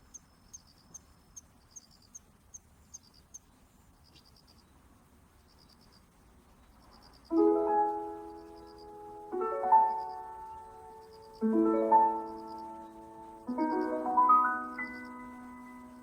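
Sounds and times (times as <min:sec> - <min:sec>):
crickets trilling: 0:00.0 - 0:04.7, 0:05.4 - 0:16.0.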